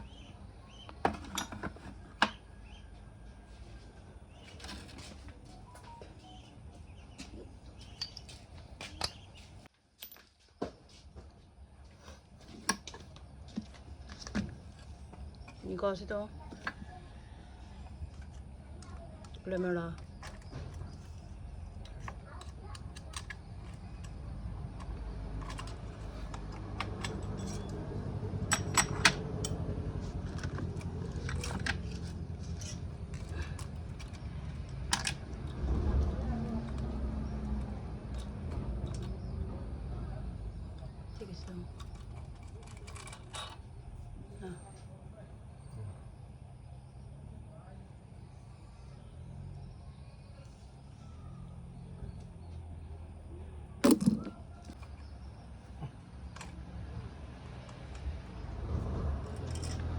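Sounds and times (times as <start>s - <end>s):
metal tools clinking: 7.8s - 10.4s, 20.0s - 35.6s, 41.7s - 43.7s, 53.8s - 54.9s, 59.2s - 59.9s.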